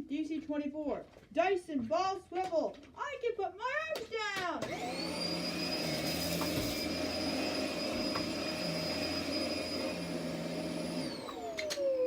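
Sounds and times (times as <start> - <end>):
vacuum cleaner whining: 4.6 - 12.0.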